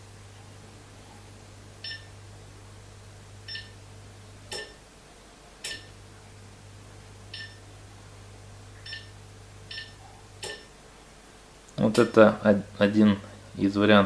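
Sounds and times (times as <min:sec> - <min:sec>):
low steady hum: 0:00.0 - 0:14.0
short electronic beeps: 0:03.5 - 0:03.8, 0:07.3 - 0:07.6, 0:08.8 - 0:09.1, 0:09.7 - 0:10.0
sharp click: 0:05.6 - 0:05.9.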